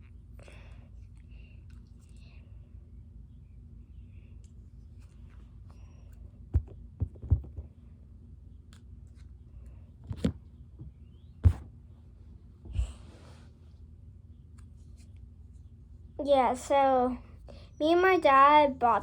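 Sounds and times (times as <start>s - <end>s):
low steady hum: 0.0s - 19.0s
handling knocks and thumps: 6.5s - 7.8s, 10.0s - 11.8s.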